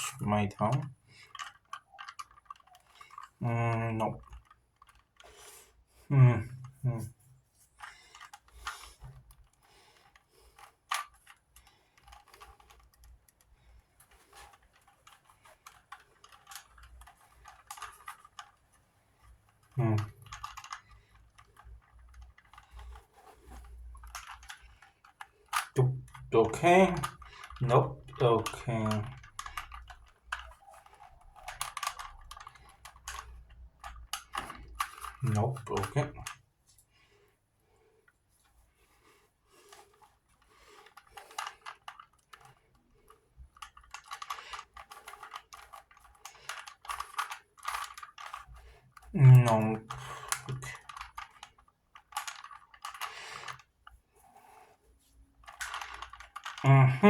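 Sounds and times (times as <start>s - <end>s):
puzzle cube clicking: 19.6s - 36.4s, 40.4s - 53.7s, 55.4s - 57.0s.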